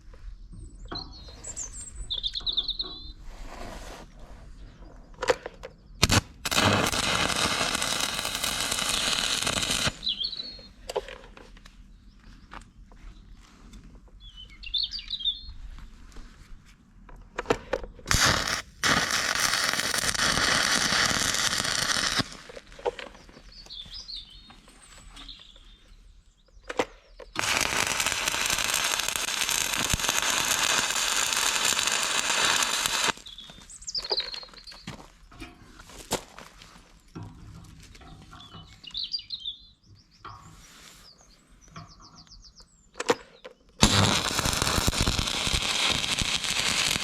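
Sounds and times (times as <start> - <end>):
birds chirping: 0.0 - 3.3, 9.0 - 15.8, 22.5 - 27.4, 32.6 - 35.8, 36.6 - 43.8
arc welder hissing: 6.0 - 10.3, 18.1 - 22.7, 27.4 - 33.3, 43.8 - 47.0.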